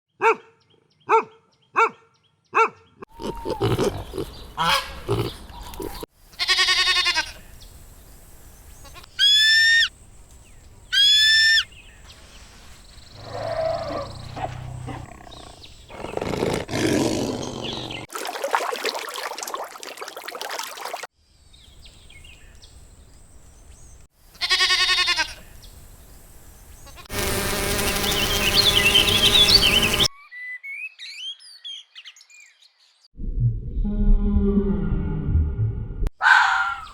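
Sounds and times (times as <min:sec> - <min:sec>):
animal roar: 0:03.1 - 0:04.4, 0:13.2 - 0:18.0
long rich animal call: 0:03.1 - 0:05.4, 0:13.2 - 0:17.8
animal clucks: 0:03.1 - 0:06.0
rising and falling animal calls: 0:03.1 - 0:06.1, 0:13.2 - 0:18.1.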